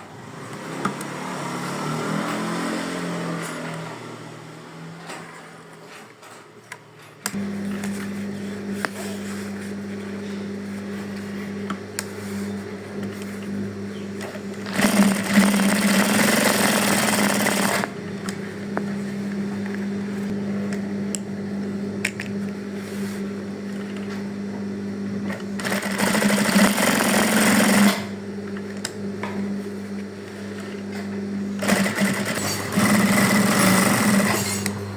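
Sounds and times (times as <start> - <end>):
sewing machine motor humming: 12.0 - 18.4, 25.3 - 29.0, 31.5 - 34.9
sewing machine stitching fast: 14.6 - 17.9, 25.6 - 28.2, 31.6 - 34.8.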